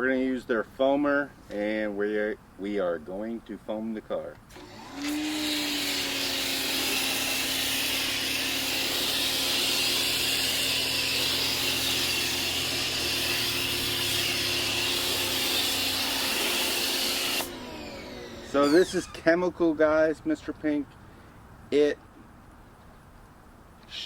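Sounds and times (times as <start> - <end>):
pressure washer motor humming: 4.5 - 19.3.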